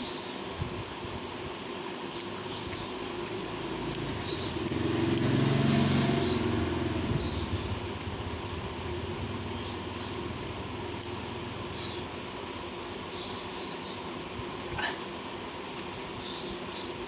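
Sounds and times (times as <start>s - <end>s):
vehicle engine passing by: 3.3s - 12.0s.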